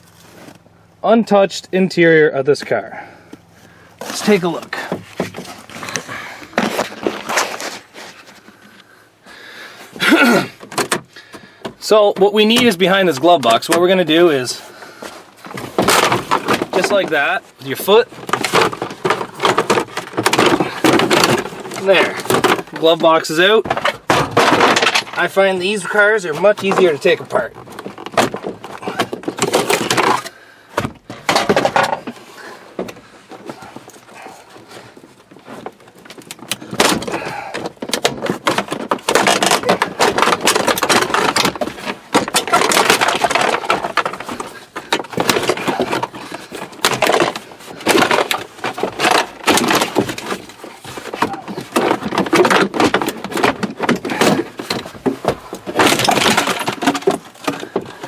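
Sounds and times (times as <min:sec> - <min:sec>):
plastic trim cracking and snapping: 0:35.9 - 0:58.0.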